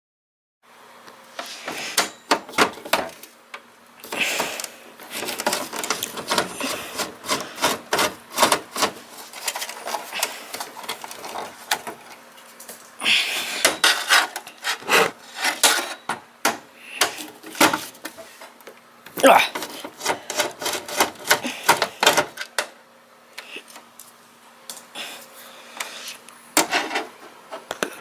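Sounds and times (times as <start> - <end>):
screwdriver clicking and scraping: 4.1 - 12.1, 13.6 - 16.1, 19.6 - 22.6.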